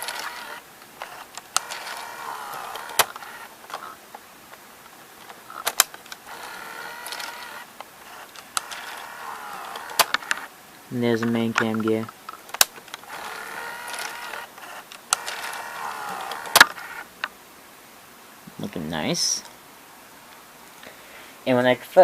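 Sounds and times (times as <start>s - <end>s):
sharp clicks: 0.0s - 3.8s, 5.2s - 10.5s, 11.2s - 17.3s
camcorder tape mechanism whirring: 0.0s - 4.0s, 5.2s - 10.5s, 12.6s - 17.1s.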